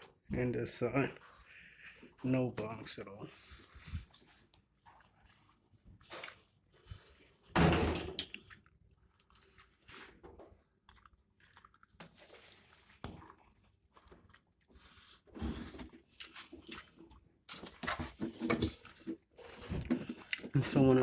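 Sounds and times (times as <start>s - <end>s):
washer basket clattering: 7.6s - 8.3s.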